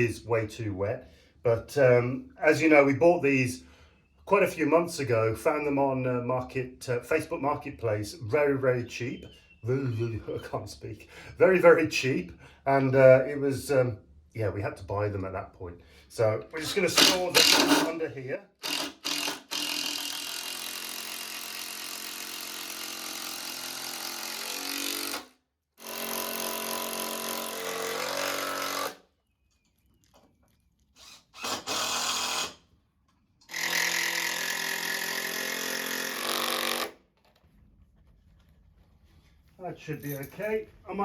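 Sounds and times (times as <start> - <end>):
power drill running: 17.0 - 17.9, 18.6 - 29.0, 31.0 - 32.6, 33.4 - 37.0.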